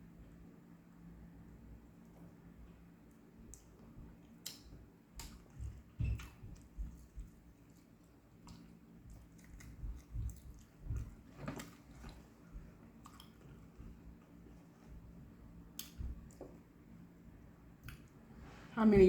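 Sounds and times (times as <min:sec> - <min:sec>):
faint low hum: 0:00.0 - 0:19.0
chewing and biting food: 0:03.5 - 0:14.7
wet mouth clicks and smacks: 0:15.7 - 0:16.4.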